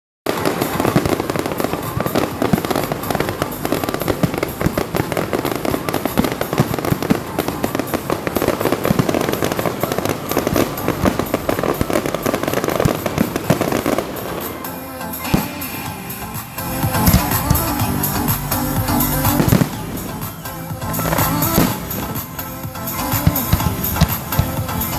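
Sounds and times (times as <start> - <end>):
fireworks bangs and crackling: 0.3 - 24.9.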